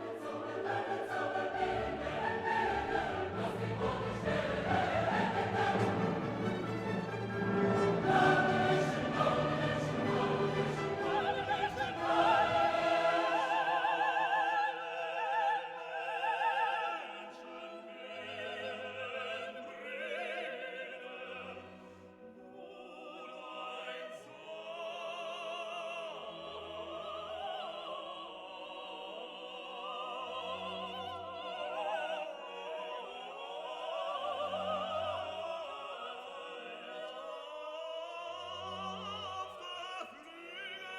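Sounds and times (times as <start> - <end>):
operatic choir and orchestra: 0.0 - 40.9.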